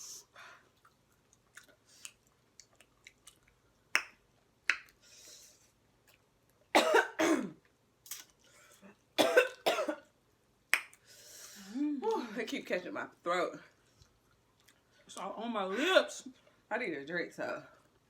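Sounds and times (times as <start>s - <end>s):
wet chewing mouth sounds: 0.7s - 3.6s
person coughing: 6.8s - 7.6s, 9.2s - 10.0s.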